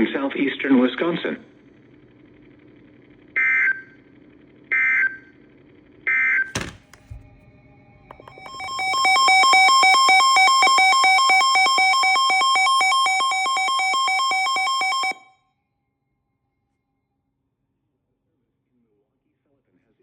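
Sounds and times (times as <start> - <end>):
rapid electronic alert beeping: 8.3 - 15.3.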